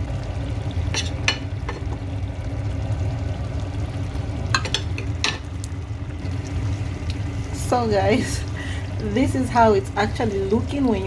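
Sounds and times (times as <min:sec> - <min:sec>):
light sizzle: 0:00.0 - 0:11.0
spoon scraping cooking pot: 0:00.8 - 0:02.0.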